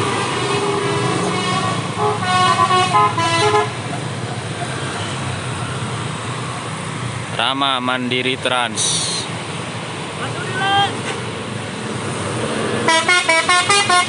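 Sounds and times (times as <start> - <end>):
vehicle engines and traffic: 0.0 - 14.0
musical air horn playing a tune: 1.3 - 3.8, 12.9 - 14.0.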